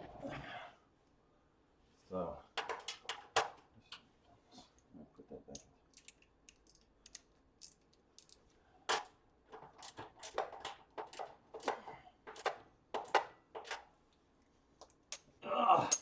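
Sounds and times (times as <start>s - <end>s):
hardware clicks and knocks: 8.2s - 13.9s.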